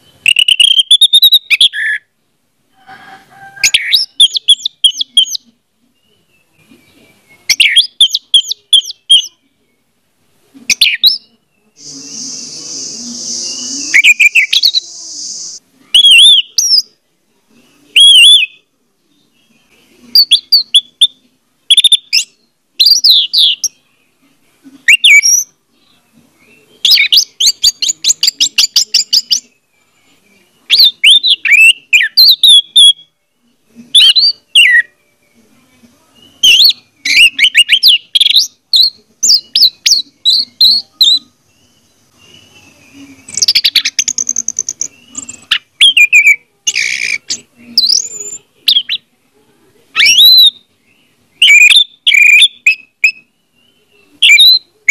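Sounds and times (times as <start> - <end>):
thrush singing: 11.8 - 16.1.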